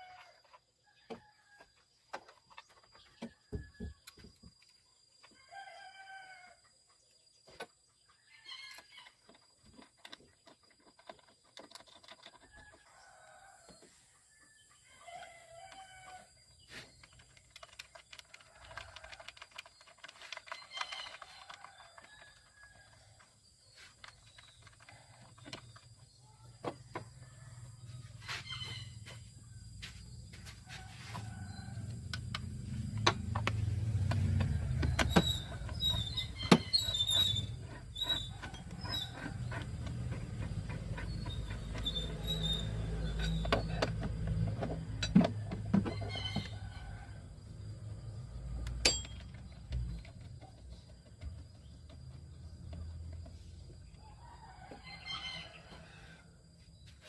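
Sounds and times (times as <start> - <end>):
rooster crowing: 0.0 - 0.4, 5.4 - 6.6, 30.4 - 47.6, 54.0 - 56.4
chickens clucking: 23.8 - 47.1.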